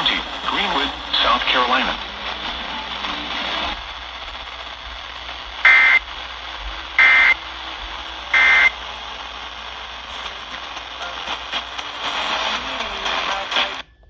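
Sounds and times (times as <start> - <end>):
radio hiss: 0.0 - 13.8
warbling data tone bursts: 5.6 - 6.1, 7.0 - 7.4.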